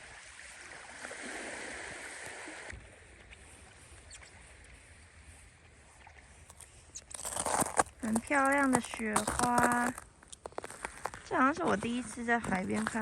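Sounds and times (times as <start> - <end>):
sea water washing at shore: 0.0 - 13.0
faint ice ticks: 6.4 - 13.0.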